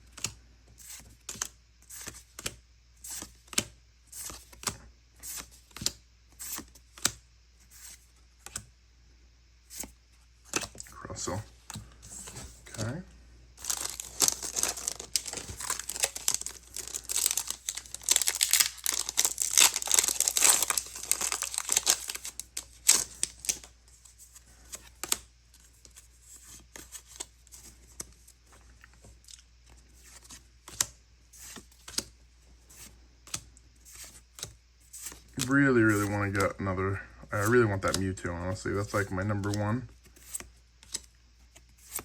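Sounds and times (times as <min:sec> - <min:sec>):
foil wrapper crinkling and tearing: 0:13.6 - 0:23.7.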